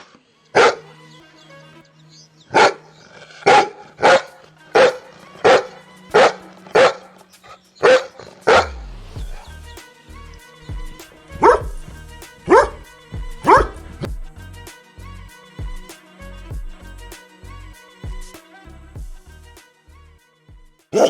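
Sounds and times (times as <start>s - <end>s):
dog barking: 2.5s - 2.8s, 3.5s - 5.6s, 6.2s - 7.1s, 7.8s - 8.7s.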